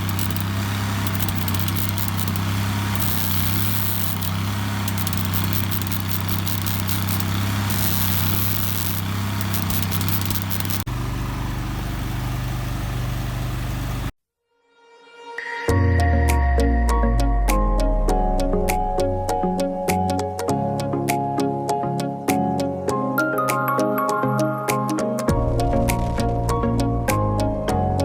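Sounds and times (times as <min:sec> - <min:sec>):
grinding on steel: 0:00.0 - 0:10.9
welding crackling hiss: 0:00.0 - 0:10.9
generator humming: 0:00.0 - 0:14.1.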